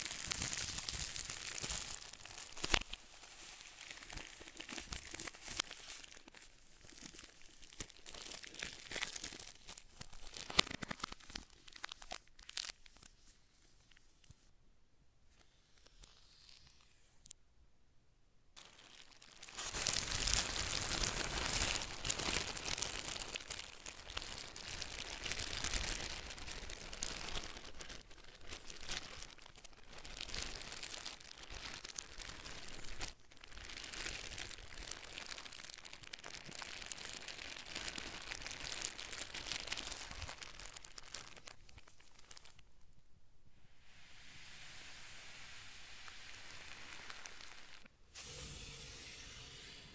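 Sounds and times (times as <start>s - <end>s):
packaging crinkling: 0.0s - 13.2s, 18.6s - 42.7s, 46.4s - 47.9s.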